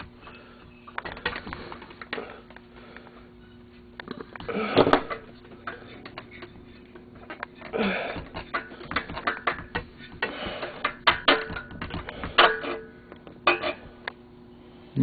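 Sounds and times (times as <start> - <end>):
metal clicks and knocks: 4.0 - 14.2.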